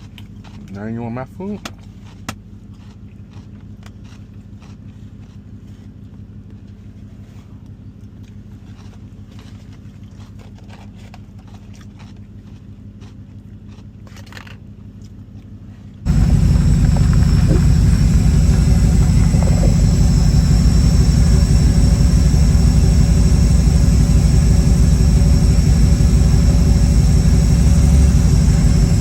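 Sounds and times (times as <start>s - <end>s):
loud low engine rumble: 15.7s - 29.0s
car engine idling: 16.1s - 29.0s.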